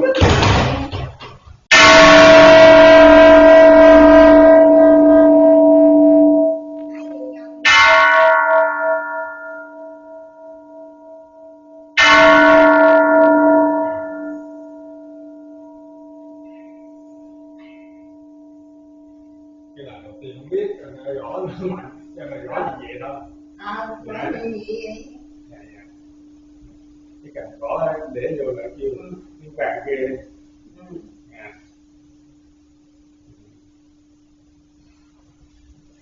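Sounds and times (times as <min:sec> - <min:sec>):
bronze bell ringing: 0:01.7 - 0:24.3.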